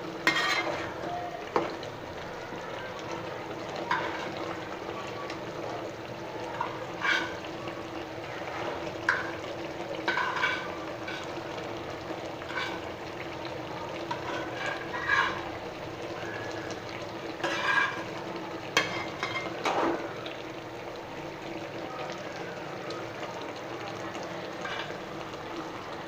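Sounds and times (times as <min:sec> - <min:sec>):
curry sizzling and bubbling: 0:00.0 - 0:26.0
spatula scraping and knocking pan: 0:00.2 - 0:01.8, 0:06.6 - 0:07.5, 0:10.1 - 0:11.4, 0:12.4 - 0:12.9, 0:14.1 - 0:15.5, 0:17.4 - 0:18.1.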